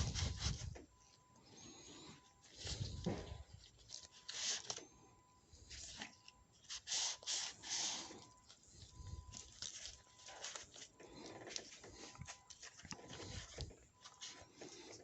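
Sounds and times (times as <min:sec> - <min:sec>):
hand scraping and rustling parts: 0:00.0 - 0:15.0.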